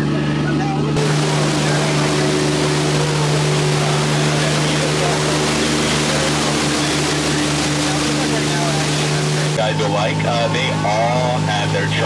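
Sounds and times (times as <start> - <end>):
boat motor humming: 0.9 - 12.0
rushing hiss: 1.0 - 9.6.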